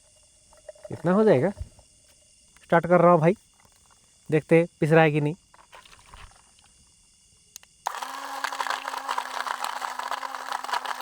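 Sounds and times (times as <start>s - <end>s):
blender motor humming: 7.8s - 11.0s
gritty churning of nuts: 7.9s - 11.0s.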